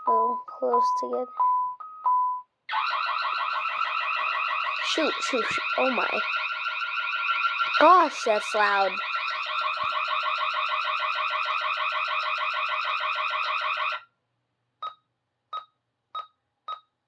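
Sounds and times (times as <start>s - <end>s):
fire alarm horn pulsing buzz: 2.7s - 14.0s.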